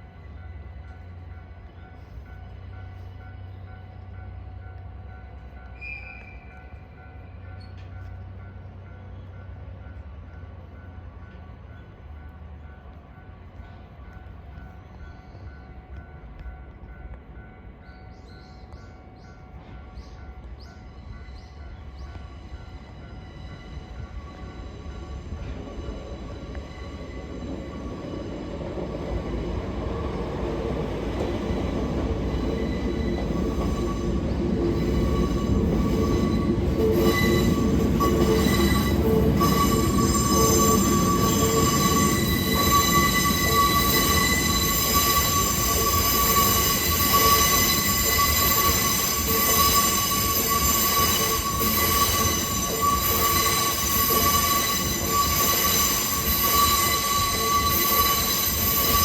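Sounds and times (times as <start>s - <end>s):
train low rumble: 0.0s - 59.0s
train wheels squealing on rails: 0.0s - 59.0s.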